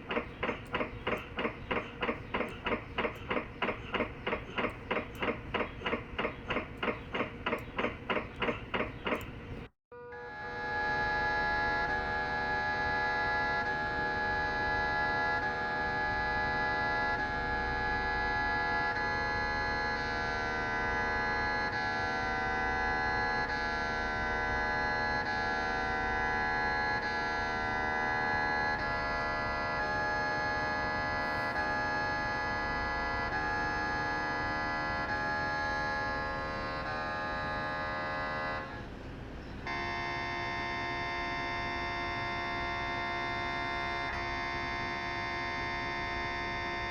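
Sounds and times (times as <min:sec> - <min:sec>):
mri scanner drone: 0:00.0 - 0:39.0, 0:39.6 - 0:46.9.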